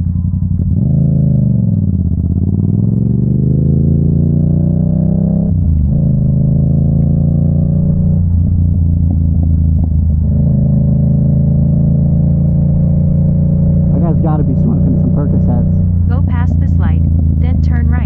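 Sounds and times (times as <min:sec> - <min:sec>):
motorcycle engine accelerating: 0:00.0 - 0:18.0.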